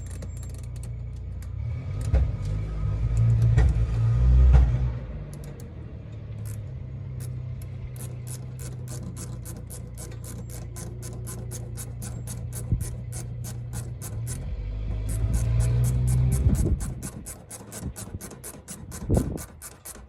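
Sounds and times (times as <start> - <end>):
music with ticking beat: 15.0 - 20.0.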